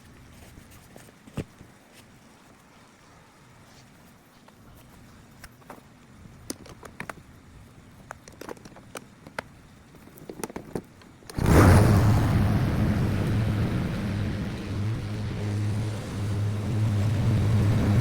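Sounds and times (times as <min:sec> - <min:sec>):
lawn mower engine running: 0:11.3 - 0:18.0.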